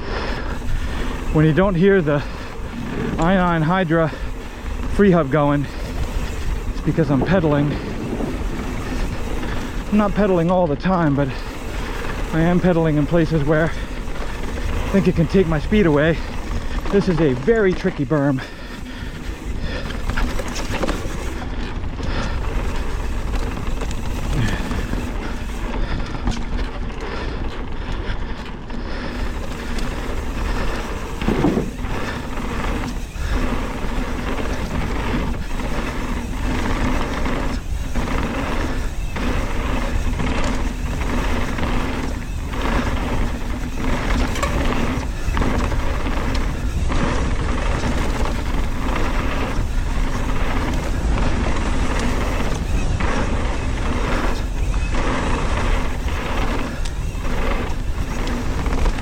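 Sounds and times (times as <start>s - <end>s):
wind rushing over microphone: 0.0s - 26.8s
bike freehub buzzing: 0.0s - 59.0s
tyres rolling over dirt: 0.0s - 59.0s
bike knocking over bumps: 29.2s - 59.0s.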